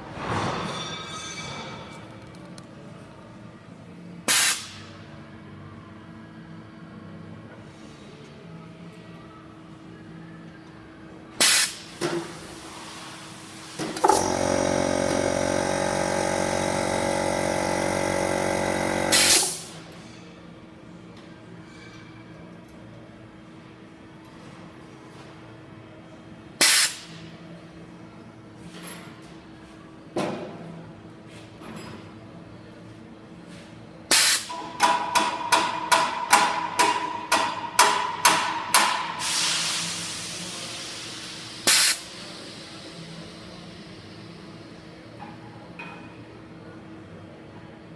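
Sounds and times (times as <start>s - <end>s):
short burst of hiss: 4.3s - 4.8s, 11.4s - 11.8s, 26.6s - 27.1s, 34.1s - 34.5s, 39.2s - 42.1s
machine motor running: 13.8s - 19.8s.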